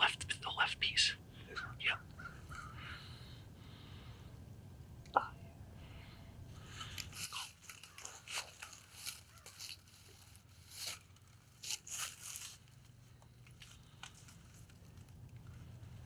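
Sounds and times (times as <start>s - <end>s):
faint low hum: 0.0s - 16.0s
rustling crinkling noises: 6.5s - 16.0s.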